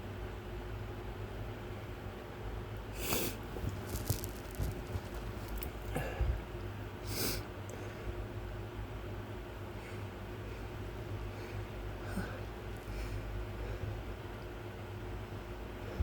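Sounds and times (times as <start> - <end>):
man sniffing sharply: 3.0 - 3.5
small rustles and clicks: 3.1 - 6.0.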